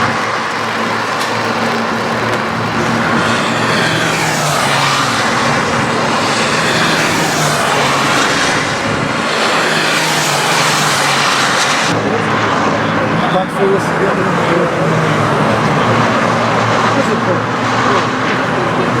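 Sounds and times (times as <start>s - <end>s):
rain and spray hiss: 0.0s - 12.0s
race car engines passing: 0.0s - 19.0s.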